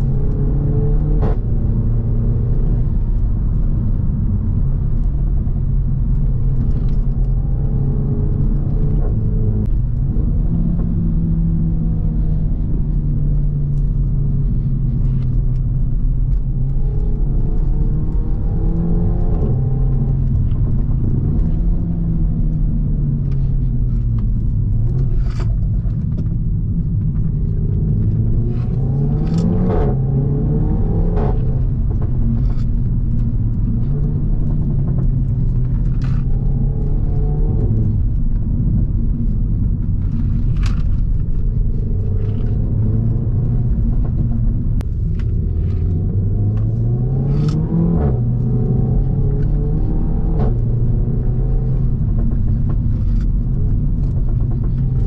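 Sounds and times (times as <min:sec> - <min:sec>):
car engine revving: 0:00.0 - 0:55.0
exhaust pops and cracks: 0:51.6 - 0:55.0.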